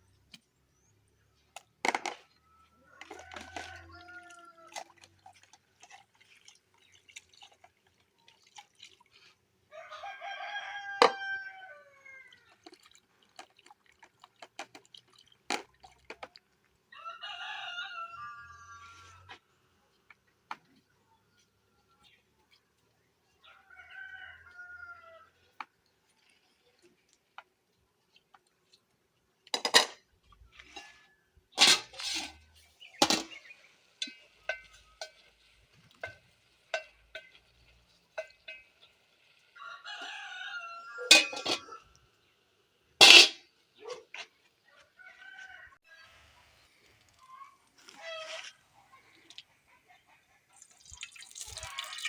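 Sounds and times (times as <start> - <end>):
rooster crowing: 2.6 - 4.8, 9.7 - 12.4, 17.0 - 19.3, 23.5 - 25.3, 39.6 - 41.8.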